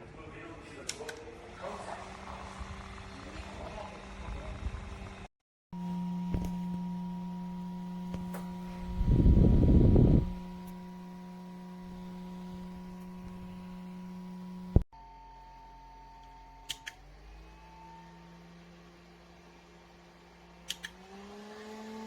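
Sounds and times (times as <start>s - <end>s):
desk fan motor humming: 5.8s - 18.8s
fan switch clicks: 16.7s - 17.0s, 20.7s - 21.0s.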